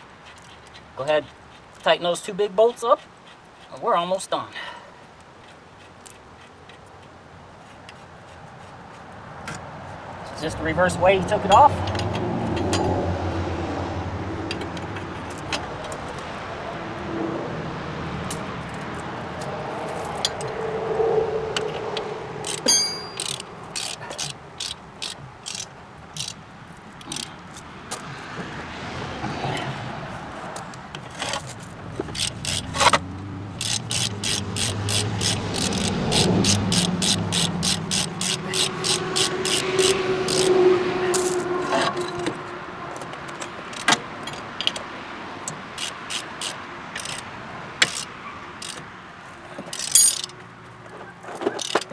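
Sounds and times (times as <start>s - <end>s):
ratchet wrench clicking: 22.4s - 26.4s, 27.0s - 27.4s, 32.0s - 33.0s, 33.6s - 40.6s, 45.5s - 48.9s, 49.7s - 50.4s, 51.6s - 51.9s.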